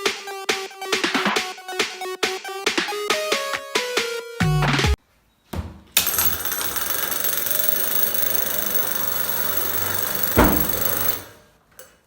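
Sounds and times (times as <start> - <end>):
alarm motor metallic rattle: 6.0 - 11.6.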